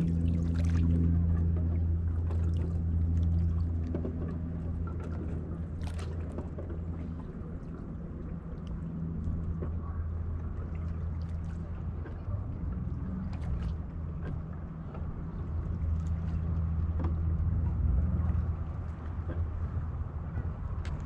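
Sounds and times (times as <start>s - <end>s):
low motor hum: 0.0s - 21.0s
seawater lapping at shore: 0.0s - 21.0s.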